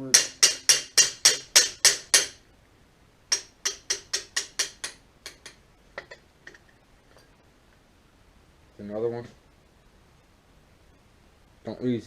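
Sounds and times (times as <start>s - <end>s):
hammer striking metal: 0.0s - 2.4s, 3.3s - 6.2s.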